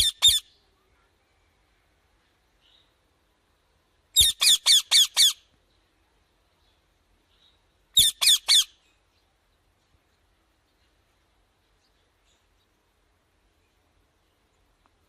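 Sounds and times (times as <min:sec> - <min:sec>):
parrot squawking: 0:00.0 - 0:00.5, 0:04.2 - 0:05.4, 0:08.0 - 0:08.7.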